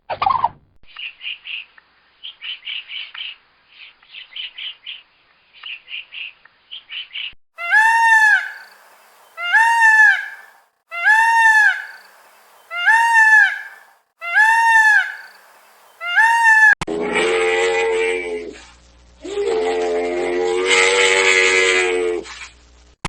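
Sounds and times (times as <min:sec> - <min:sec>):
bird honking calls: 0:07.6 - 0:16.8.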